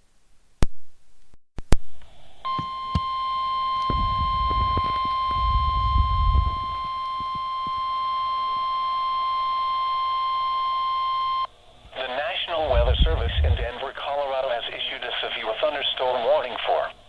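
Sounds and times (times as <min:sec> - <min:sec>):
steady warning alarm tone: 0:02.4 - 0:14.0
low rumble: 0:03.9 - 0:06.9, 0:12.5 - 0:13.8.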